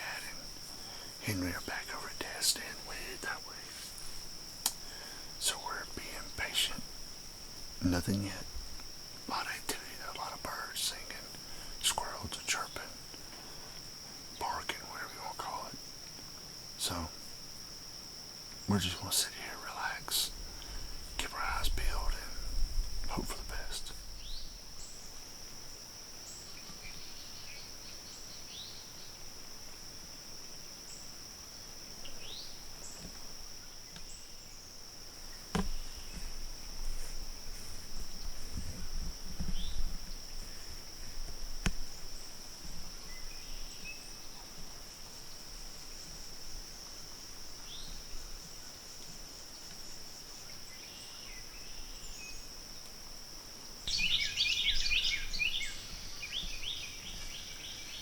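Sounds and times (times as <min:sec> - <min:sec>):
high-pitched insect drone: 0:00.0 - 0:58.0
bird chirps and calls: 0:53.9 - 0:58.0.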